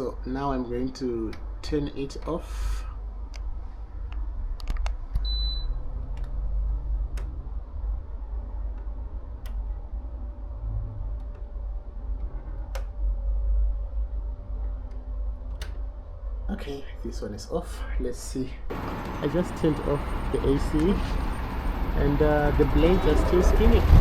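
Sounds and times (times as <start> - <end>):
low rumble: 2.8 - 16.5, 18.7 - 24.0
air conditioner beep: 5.2 - 5.8, 18.7 - 23.8.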